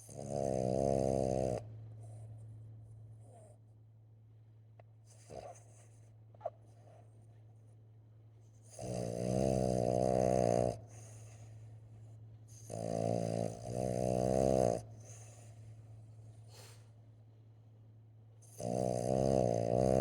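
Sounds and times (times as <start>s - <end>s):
dog snoring: 0.0s - 2.3s, 5.1s - 7.0s, 8.5s - 11.6s, 12.5s - 15.7s, 18.4s - 20.0s.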